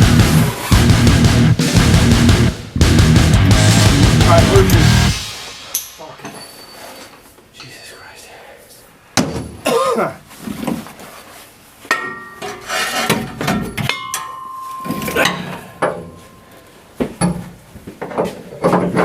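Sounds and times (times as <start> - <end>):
metallic ring from strike: 4.7 - 7.1, 11.9 - 12.6, 13.8 - 16.5
metal tools clanking and scraping: 5.7 - 8.0, 11.9 - 16.5.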